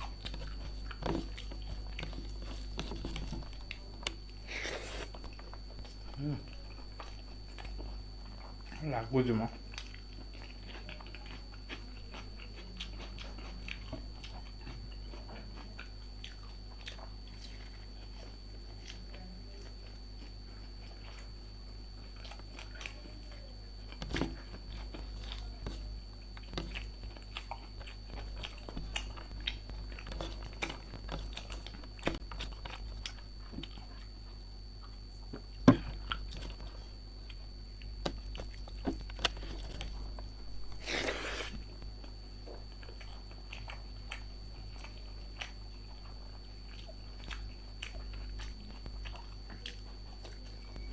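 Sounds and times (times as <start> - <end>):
person chewing food: 0.0 - 50.9
crunchy bites: 23.8 - 50.9
wet mouth sounds: 40.7 - 41.6.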